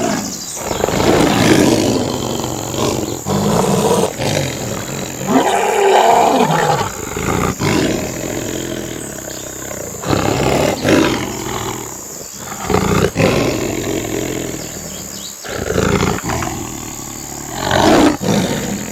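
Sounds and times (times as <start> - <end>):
lions roaring and fighting: 0.0 - 18.9.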